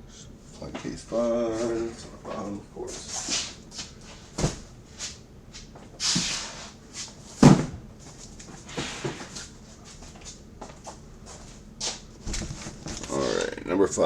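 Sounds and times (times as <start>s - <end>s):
cardboard box thump: 7.4s - 7.8s
cardboard boxes knocking and scraping: 12.3s - 13.2s.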